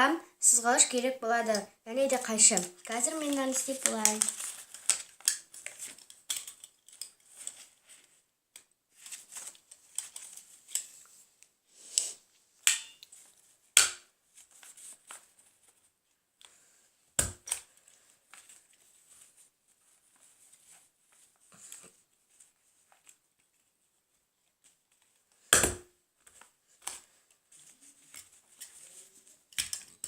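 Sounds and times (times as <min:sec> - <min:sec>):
paper rustling and crinkling: 0:02.1 - 0:08.2, 0:08.9 - 0:11.3, 0:14.3 - 0:15.9, 0:17.6 - 0:25.4, 0:26.3 - 0:30.0.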